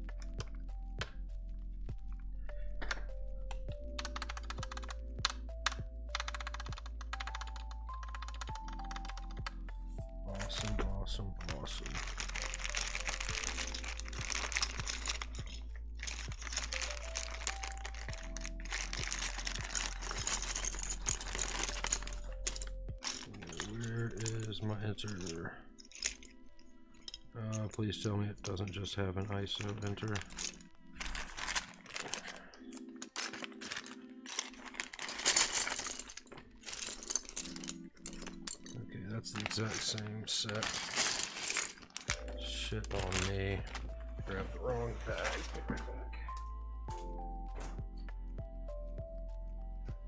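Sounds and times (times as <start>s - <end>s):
soft background music: 0.0s - 50.0s
keycaps clicking: 2.8s - 27.8s, 28.4s - 43.9s
plastic bag crinkling: 10.3s - 27.8s, 28.5s - 45.8s.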